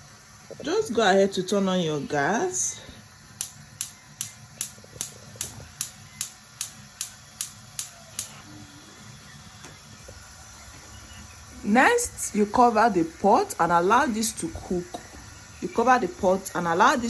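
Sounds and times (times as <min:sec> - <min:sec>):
gas stove igniter clicking: 0:03.4 - 0:08.4.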